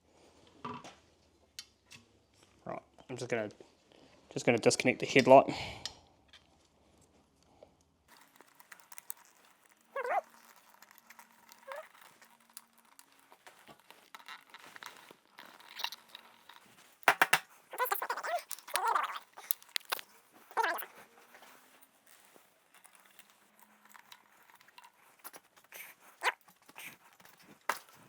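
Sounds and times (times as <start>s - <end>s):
clicks of small parts handled: 8.1s - 28.0s
dog whining: 9.9s - 12.2s, 17.7s - 19.9s, 20.5s - 21.0s.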